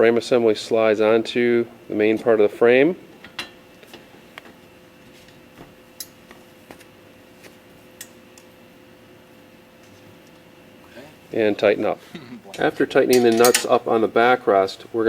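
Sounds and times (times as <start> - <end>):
faint steady hum: 0.0 - 15.0
metal parts clicking and clinking: 13.1 - 13.8.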